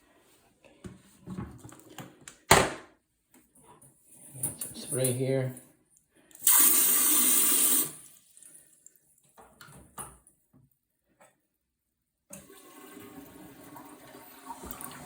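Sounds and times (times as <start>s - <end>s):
water running: 6.3s - 9.7s, 12.3s - 15.0s
toilet flushing: 6.4s - 8.4s, 12.3s - 15.0s.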